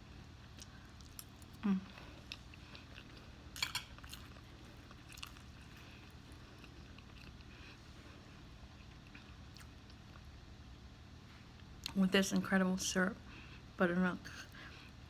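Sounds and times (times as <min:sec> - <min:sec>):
person chewing with mouth smacks: 0:00.4 - 0:10.3
short hummed vocal sound: 0:01.6 - 0:02.2.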